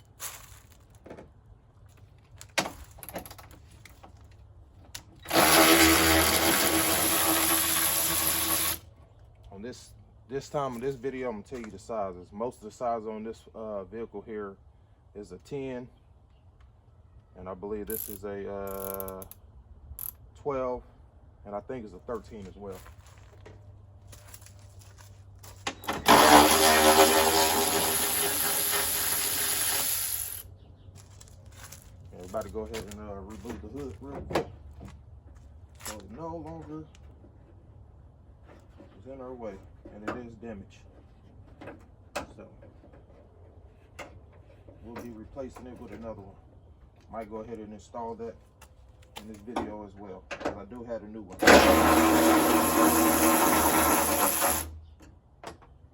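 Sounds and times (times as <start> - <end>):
power drill running: 5.2 - 8.8, 25.8 - 30.5, 51.4 - 54.8
power tool clicks: 17.9 - 19.4.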